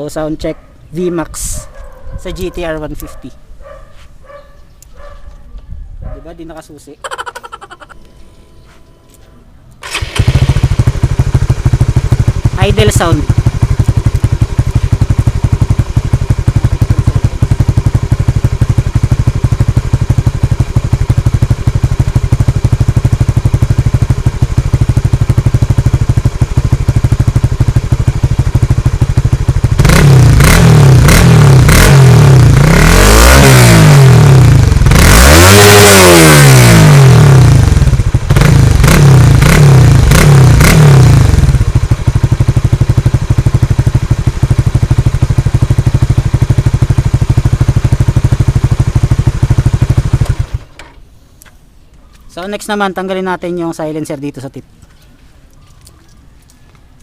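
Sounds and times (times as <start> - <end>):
motorcycle engine idling and revving: 9.8 - 51.0.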